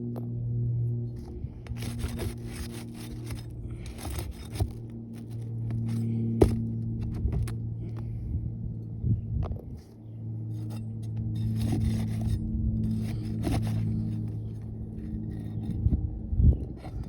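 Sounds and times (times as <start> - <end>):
steady low hum: 0.0 - 17.0
scraping on roof shingles: 1.7 - 7.6, 11.4 - 15.3.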